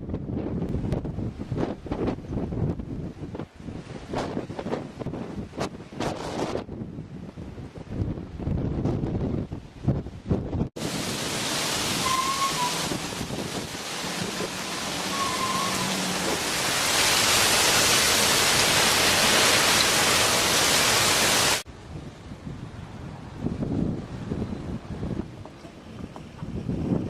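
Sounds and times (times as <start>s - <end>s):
wind noise burst: 0.0s - 27.0s
heavy rain pouring: 10.8s - 21.7s.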